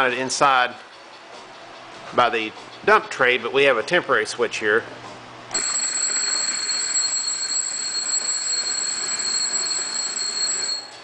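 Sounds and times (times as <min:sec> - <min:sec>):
alarm bell ringing: 0:05.5 - 0:11.0.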